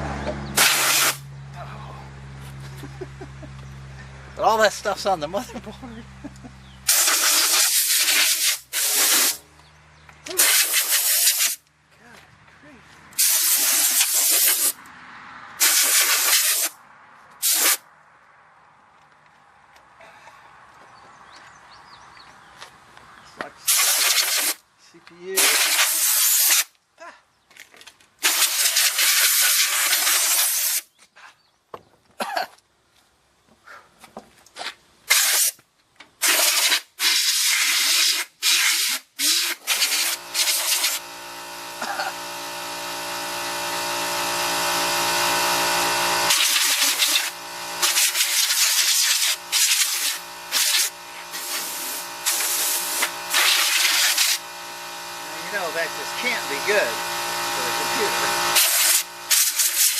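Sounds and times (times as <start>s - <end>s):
compressed air hissing blasts: 0.5s - 1.3s, 6.8s - 9.5s, 10.3s - 11.6s, 13.1s - 14.8s, 15.6s - 16.8s, 17.4s - 17.8s, 23.6s - 24.6s, 25.4s - 26.7s, 28.2s - 30.9s, 35.1s - 35.6s, 36.2s - 42.8s, 46.1s - 59.9s.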